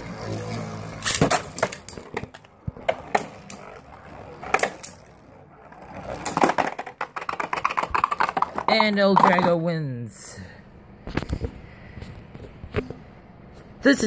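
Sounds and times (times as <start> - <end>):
spinning tops whirring: 0.0 - 9.3.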